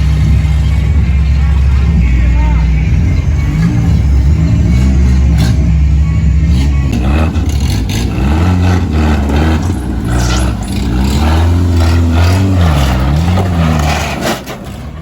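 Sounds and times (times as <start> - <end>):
bass-heavy music from car speakers: 0.0 - 7.6.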